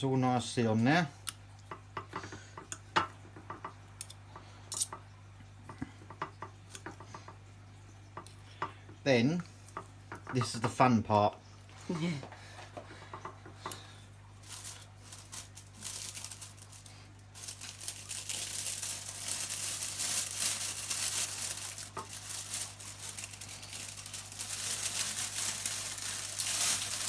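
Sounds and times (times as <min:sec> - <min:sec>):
plastic bag crinkling: 0:14.3 - 0:27.0.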